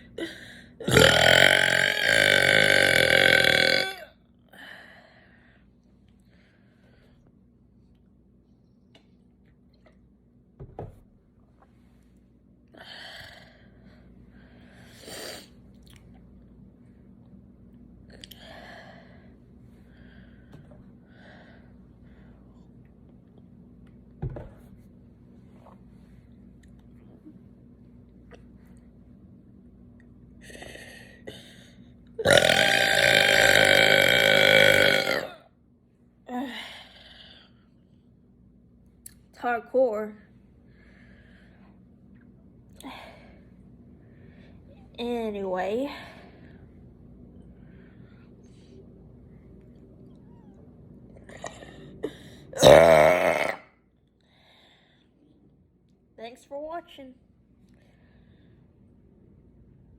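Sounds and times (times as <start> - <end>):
person burping: 0.8 - 4.1, 32.2 - 35.4, 52.6 - 53.7.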